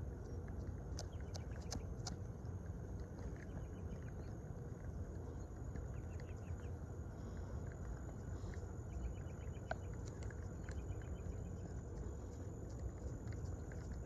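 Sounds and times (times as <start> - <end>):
faint bird chirps: 3.2 - 14.0.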